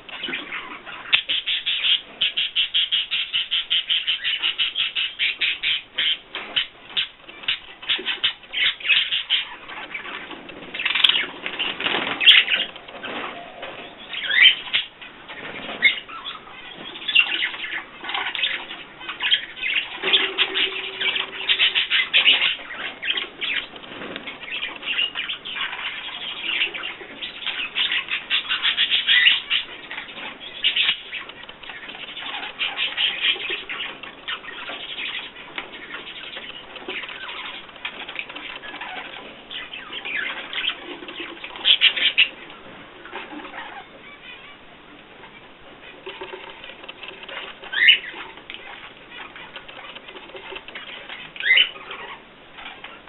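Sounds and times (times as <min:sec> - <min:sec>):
birds chirping: 0:00.0 - 0:53.0
birds fluttering wings: 0:08.6 - 0:16.1.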